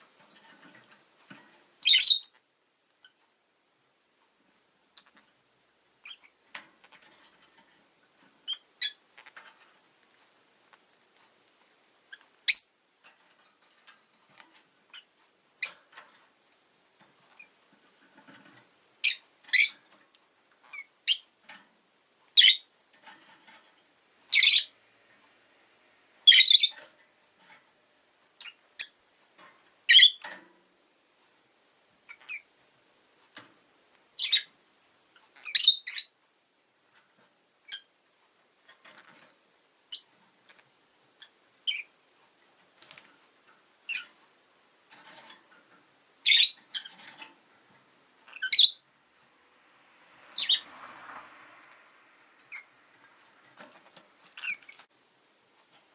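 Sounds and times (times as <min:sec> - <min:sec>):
lovebirds chirping and squawking: 0:01.8 - 0:02.4, 0:06.0 - 0:07.6, 0:08.3 - 0:09.7, 0:12.1 - 0:13.4, 0:14.3 - 0:16.0, 0:18.3 - 0:20.0, 0:20.6 - 0:21.4, 0:22.3 - 0:22.7, 0:24.3 - 0:24.8, 0:26.2 - 0:26.9, 0:28.3 - 0:29.0, 0:29.9 - 0:30.3, 0:32.0 - 0:32.5, 0:34.2 - 0:36.2, 0:37.6 - 0:37.9, 0:41.2 - 0:41.9, 0:43.8 - 0:44.2, 0:46.2 - 0:47.3, 0:48.2 - 0:48.9, 0:50.3 - 0:50.8, 0:52.4 - 0:54.9.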